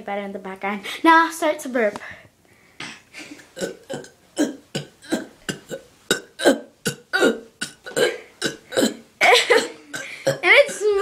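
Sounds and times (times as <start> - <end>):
person burping rapidly: 2.8 - 11.0.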